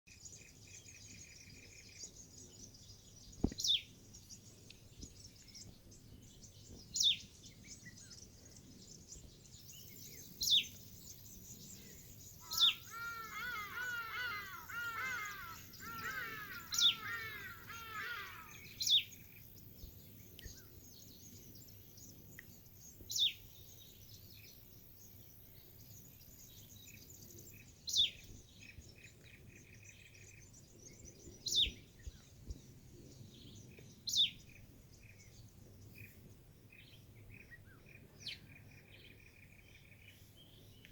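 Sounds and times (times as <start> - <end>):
chattering bird chirps: 12.4 - 19.2.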